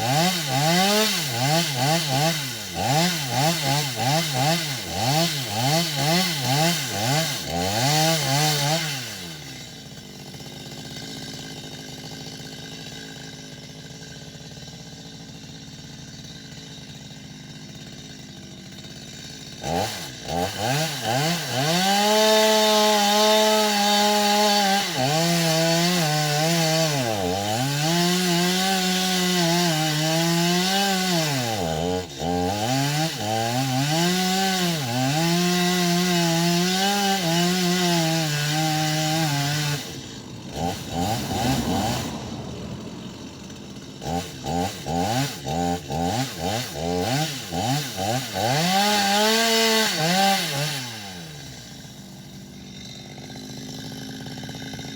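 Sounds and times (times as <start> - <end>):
chainsaw revving and idling: 0.0 - 54.9.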